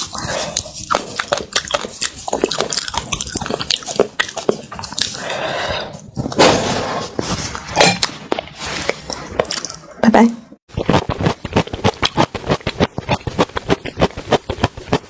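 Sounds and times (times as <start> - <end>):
wet chewing and mouth smacks: 0.0 - 5.4, 8.0 - 10.0, 10.7 - 15.0.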